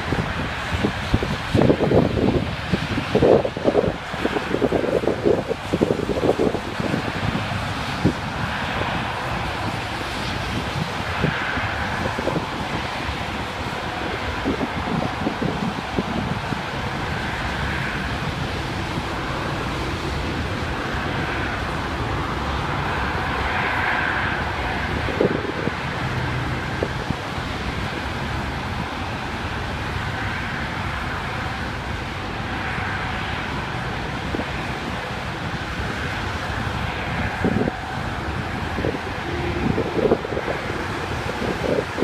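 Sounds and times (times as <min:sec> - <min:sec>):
wind on microphone: 0:00.0 - 0:42.0
distant engine rumble: 0:33.3 - 0:42.0.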